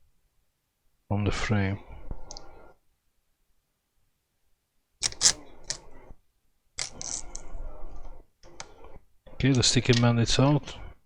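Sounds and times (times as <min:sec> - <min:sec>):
adhesive scraping and rasping: 0:05.0 - 0:06.1.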